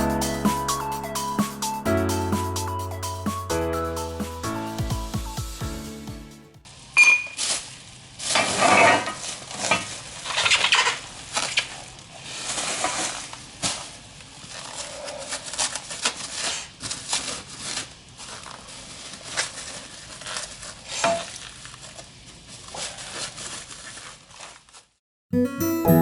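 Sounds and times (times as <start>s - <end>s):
music: 0.0s - 6.6s, 25.3s - 26.0s.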